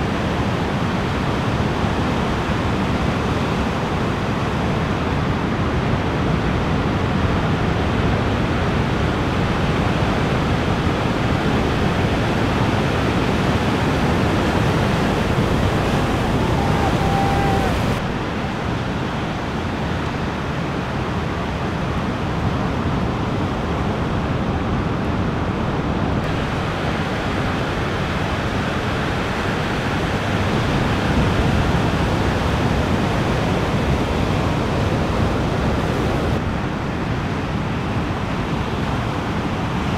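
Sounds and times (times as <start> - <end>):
wind noise on microphone: 0.0 - 39.9
ocean surf breaking: 11.5 - 19.6, 26.2 - 38.0.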